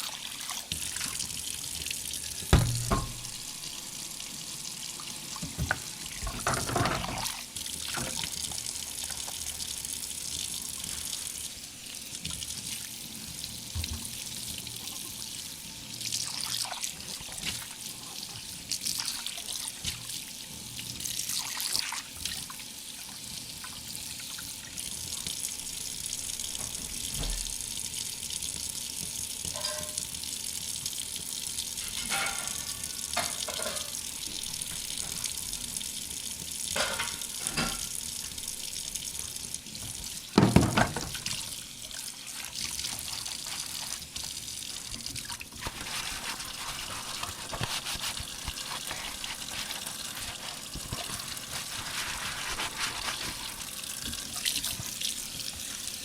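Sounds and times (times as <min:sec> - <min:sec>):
tap water running into sink: 0:00.1 - 0:15.3, 0:16.0 - 0:56.0
dishes clinking and knocking: 0:02.5 - 0:03.5, 0:06.3 - 0:07.2, 0:29.5 - 0:30.0, 0:33.2 - 0:34.0, 0:40.4 - 0:41.2.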